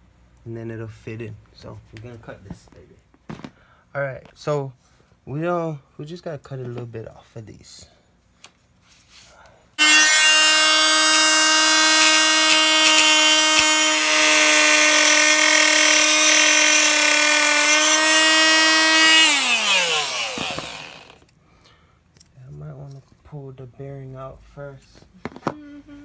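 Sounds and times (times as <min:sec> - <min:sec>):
power cutting tool whining: 0:09.8 - 0:21.2.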